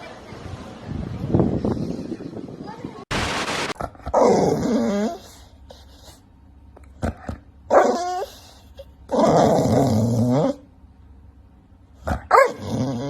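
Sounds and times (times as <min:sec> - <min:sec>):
dog growling: 0:03.8 - 0:05.9, 0:06.9 - 0:10.7, 0:12.0 - 0:13.0.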